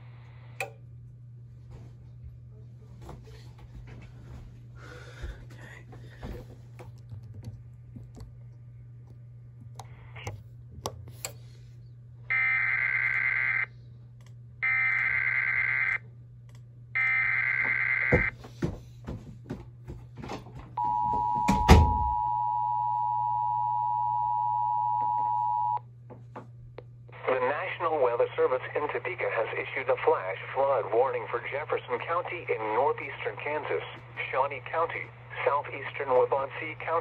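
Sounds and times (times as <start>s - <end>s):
low steady hum: 0.0s - 37.0s
warbling data tones: 12.3s - 13.7s
two-tone attention signal: 20.8s - 25.8s.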